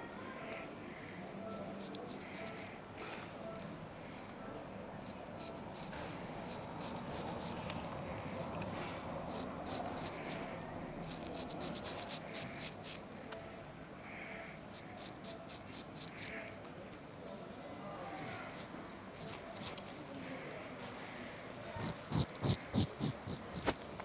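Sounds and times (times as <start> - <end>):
razor scraping stubble: 1.5 - 2.8, 5.0 - 8.6, 9.2 - 13.0, 14.7 - 16.7, 18.2 - 20.0, 21.8 - 23.8.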